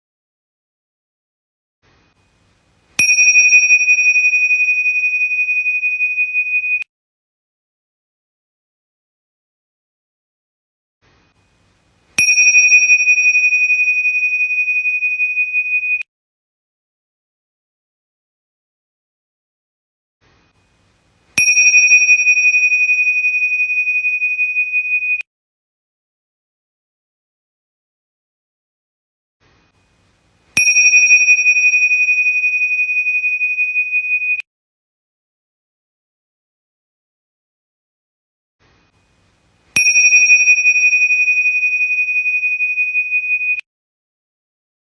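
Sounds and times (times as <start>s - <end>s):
high-pitched bell ding: 3.0s - 6.9s, 12.2s - 16.1s, 21.4s - 25.3s, 30.6s - 34.4s, 39.8s - 43.6s.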